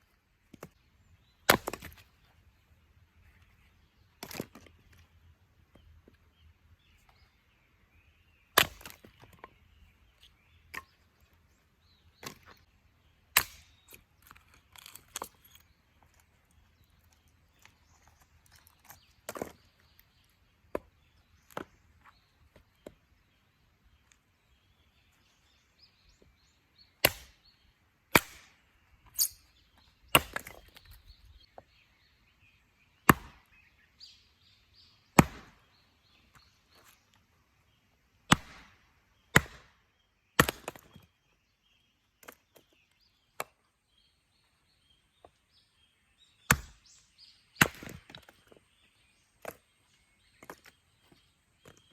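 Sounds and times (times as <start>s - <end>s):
hatchet chopping wood: 1.4s - 2.0s, 8.6s - 9.5s, 12.2s - 12.6s, 13.3s - 15.4s, 27.0s - 27.4s, 28.1s - 28.6s, 30.1s - 31.0s, 33.0s - 33.5s, 35.2s - 35.7s, 38.3s - 39.8s, 40.4s - 41.1s, 46.4s - 47.0s, 47.6s - 48.6s
wood cracking: 13.4s - 16.3s.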